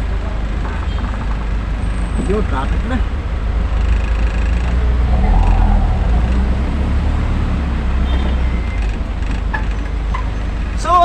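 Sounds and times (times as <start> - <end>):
truck engine rumbling: 3.2 - 10.1.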